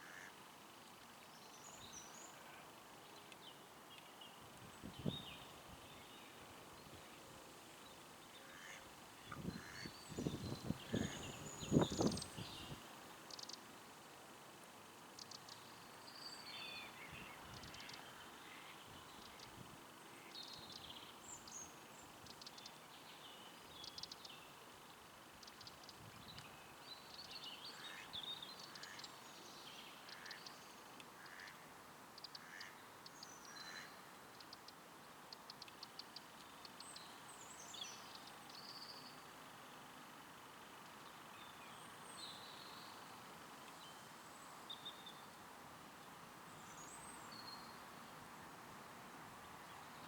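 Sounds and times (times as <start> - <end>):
steady background hiss: 0.0 - 50.0
small birds chirping: 9.4 - 13.7.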